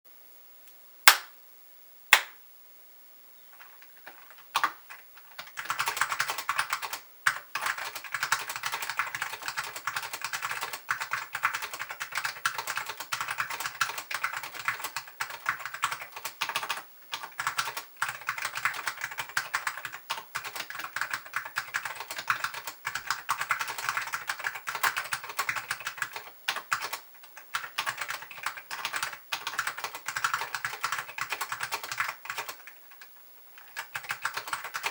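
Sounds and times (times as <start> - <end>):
sharp click: 1.1 - 1.3, 2.1 - 2.4
mechanical keyboard typing: 4.0 - 34.9.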